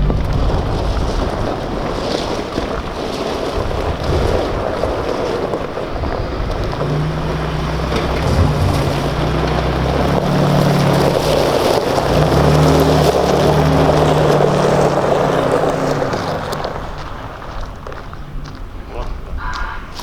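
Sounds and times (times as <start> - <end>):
wind noise on microphone: 0.0 - 13.0
engine running: 0.0 - 19.0.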